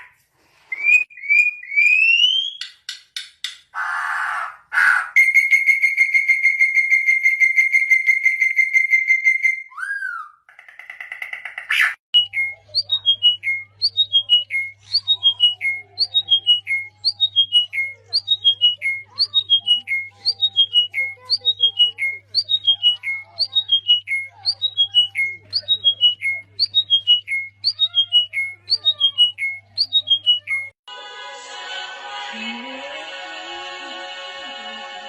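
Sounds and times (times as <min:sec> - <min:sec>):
bird trilling: 0:10.1 - 0:30.7
bird whistled phrase: 0:11.7 - 0:30.7.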